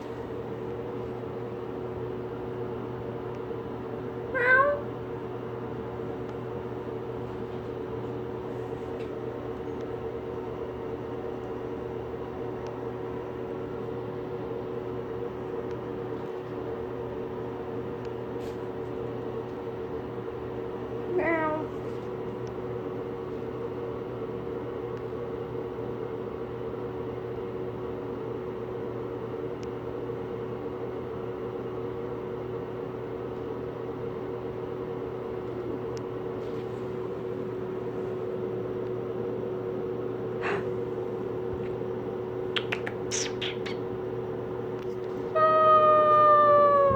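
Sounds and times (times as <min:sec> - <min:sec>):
mechanical hum: 0:00.0 - 0:46.9
kitten meowing: 0:04.4 - 0:04.9, 0:45.3 - 0:46.9.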